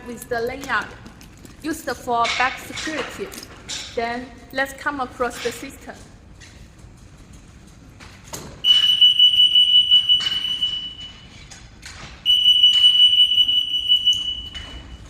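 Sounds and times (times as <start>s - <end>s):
security gate alarm beeping: 8.6s - 15.0s.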